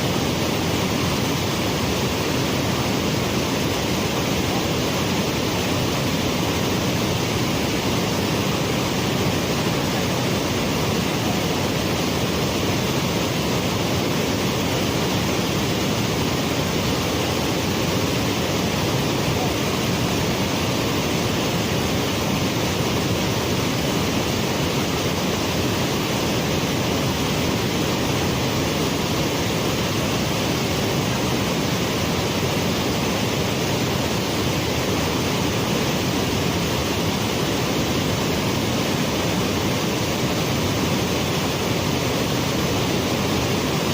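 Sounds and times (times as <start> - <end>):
waterfall rushing: 0.0 - 43.9.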